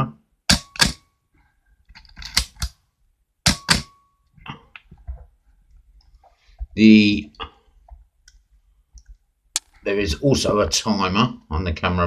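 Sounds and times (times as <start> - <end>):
camera shutter clacking: 0.5 - 1.0, 3.5 - 3.9.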